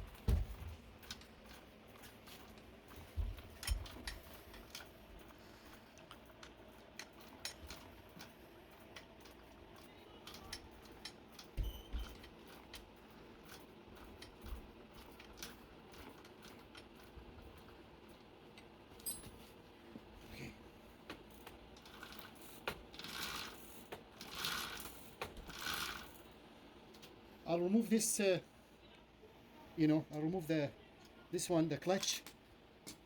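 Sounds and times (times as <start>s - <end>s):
bicycle chain clicking: 1.0s - 17.8s, 21.3s - 26.3s.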